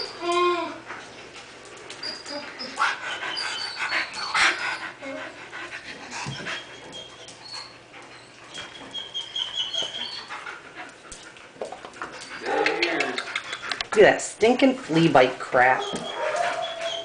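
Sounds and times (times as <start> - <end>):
dog whining: 0.0 - 0.9, 1.8 - 5.4, 6.2 - 10.6, 12.2 - 13.8, 15.6 - 17.0
dogs panting and scuffling: 0.0 - 17.0.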